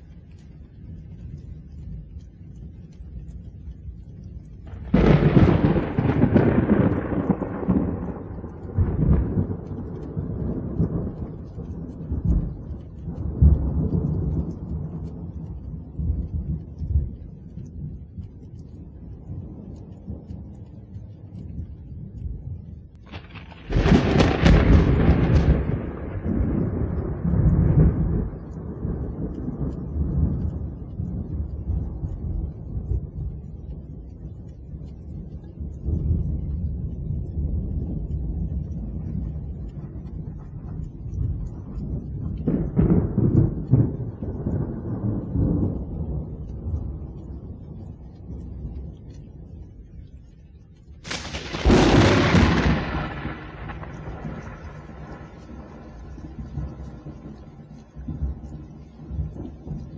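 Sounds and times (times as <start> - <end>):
rolling thunder rumble: 0.0 - 59.9
lightning crack: 4.6 - 16.2, 23.0 - 33.4, 51.0 - 59.9.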